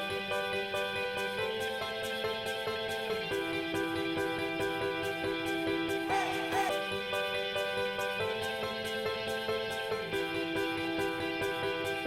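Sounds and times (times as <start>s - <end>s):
instrumental chords over soft beat: 0.0s - 12.0s.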